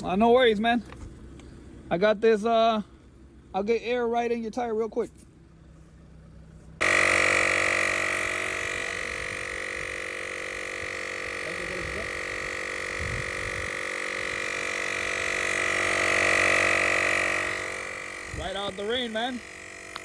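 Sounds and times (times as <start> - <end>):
tire inflator compressor humming: 0.0 - 1.9, 5.0 - 20.0.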